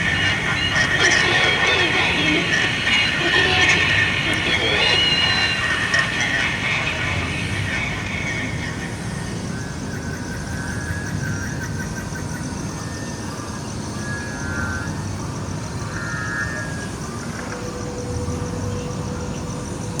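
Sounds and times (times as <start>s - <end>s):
low engine rumble: 0.0s - 11.4s
steady hum: 0.0s - 12.6s.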